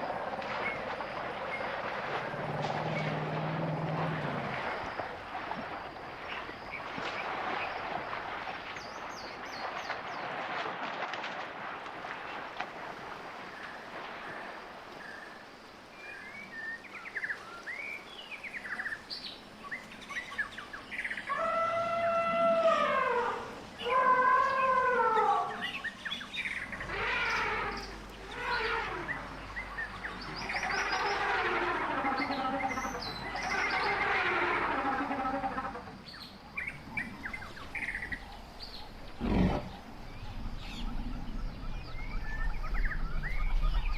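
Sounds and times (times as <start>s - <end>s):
rustling hiss: 0.0s - 43.9s
elephant call: 21.2s - 38.2s, 39.1s - 40.0s
birds chirping: 23.7s - 43.9s.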